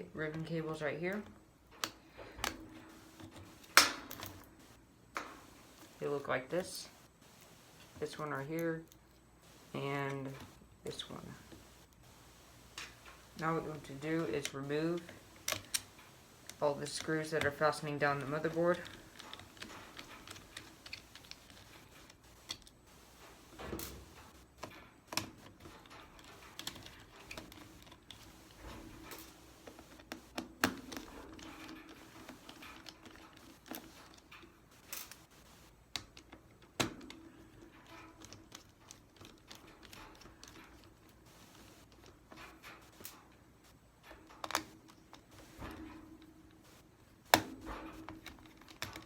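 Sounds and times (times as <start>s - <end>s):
screwdriver clicks and taps: 15.0s - 17.5s.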